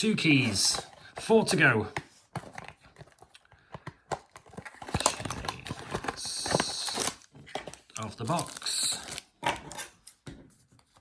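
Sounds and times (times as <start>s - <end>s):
cardboard tearing: 4.1s - 9.9s
wrapping rustling: 4.1s - 10.0s.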